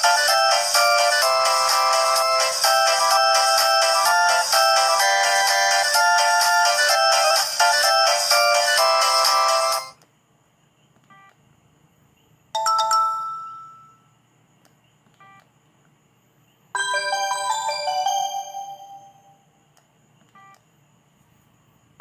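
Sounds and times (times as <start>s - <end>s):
ringtone melody from phone speaker: 0.0s - 10.0s, 12.6s - 14.0s, 16.8s - 19.4s.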